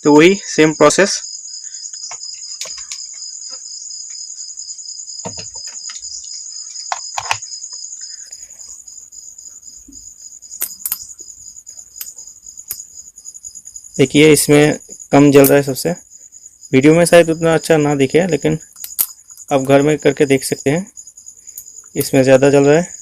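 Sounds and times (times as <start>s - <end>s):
crickets chirping: 0.0s - 23.0s
handling clicks and taps: 2.0s - 3.2s, 6.8s - 7.8s.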